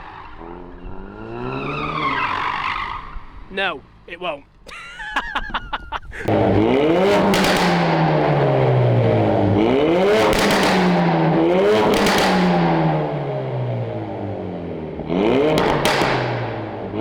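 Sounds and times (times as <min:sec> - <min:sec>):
car engine revving: 0:00.0 - 0:04.6, 0:06.1 - 0:17.0
exhaust crackles: 0:00.0 - 0:17.0.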